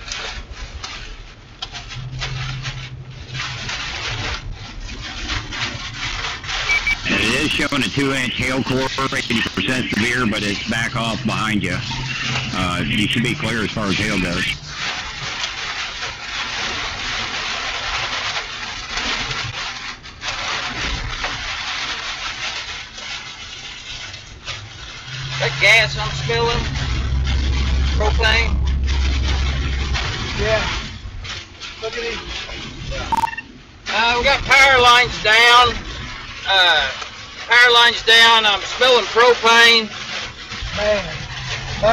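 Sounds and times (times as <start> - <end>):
wind buffeting a vehicle: 23.2 - 33.1.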